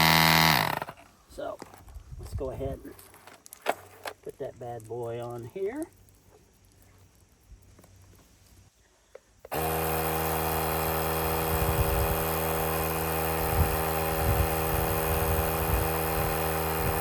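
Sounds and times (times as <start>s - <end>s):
tire inflator compressor humming: 0.0s - 1.2s, 9.4s - 17.0s.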